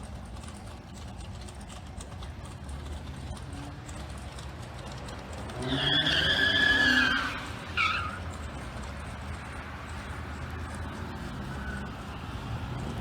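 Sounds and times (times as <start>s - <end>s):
low engine rumble: 0.0s - 13.0s
car tyres squealing: 2.8s - 13.0s.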